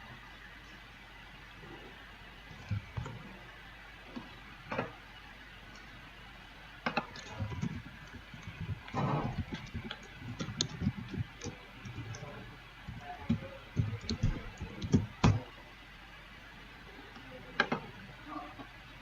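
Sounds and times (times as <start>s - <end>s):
computer keyboard and mouse clicking: 6.8s - 15.4s, 17.6s - 17.9s.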